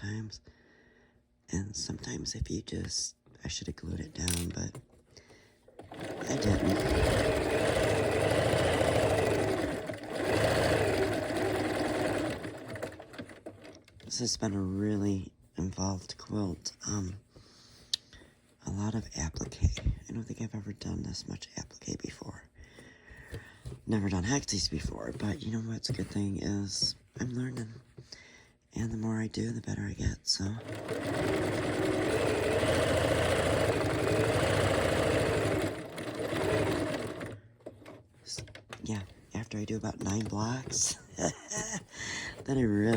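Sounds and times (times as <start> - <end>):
sewing machine stitching: 5.7 - 14.2, 30.4 - 42.9.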